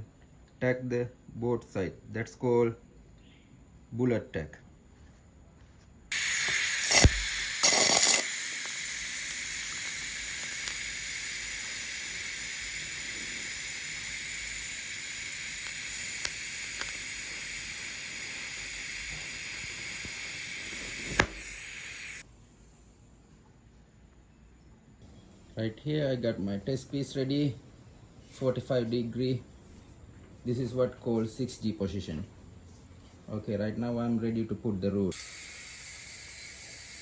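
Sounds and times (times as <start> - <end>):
welding arc crackles: 6.1 - 22.2
welding arc hiss: 6.1 - 22.3, 35.1 - 37.0
sharp pop: 6.4 - 8.2, 21.0 - 21.5.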